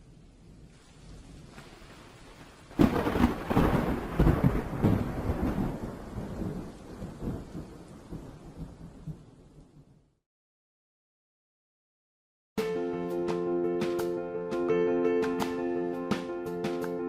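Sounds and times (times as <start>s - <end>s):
rain hiss: 0.0s - 9.8s
thunder crack and rumble: 0.0s - 10.0s.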